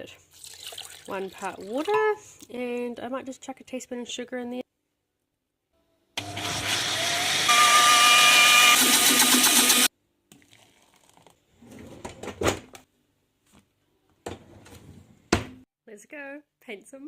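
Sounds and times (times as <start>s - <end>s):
blender motor whine: 6.2s - 9.9s.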